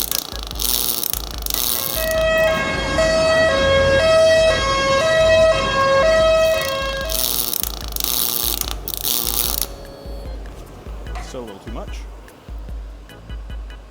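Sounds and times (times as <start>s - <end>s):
welding crackle: 0.0s - 2.6s, 6.3s - 10.3s
welding arc buzzing in two tones: 0.0s - 2.7s, 5.2s - 10.4s.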